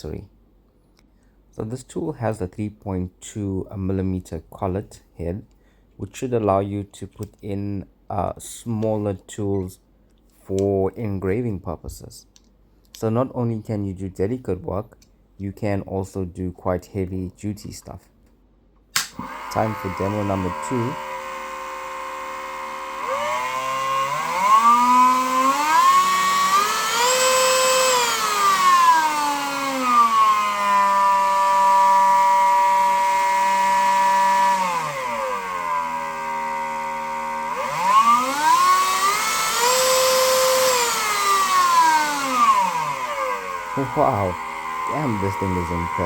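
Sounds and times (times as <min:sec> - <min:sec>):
rotary tool motor whine: 0:19.2 - 0:46.0.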